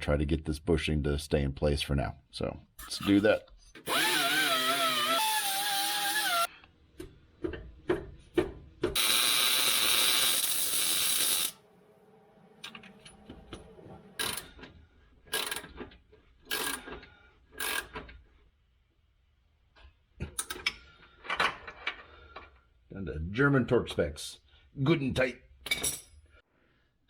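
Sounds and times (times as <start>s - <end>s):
power tool whining: 3.8s - 6.5s, 9.0s - 11.6s
ratchet wrench clicking: 15.3s - 15.7s, 16.5s - 16.9s, 17.6s - 18.0s.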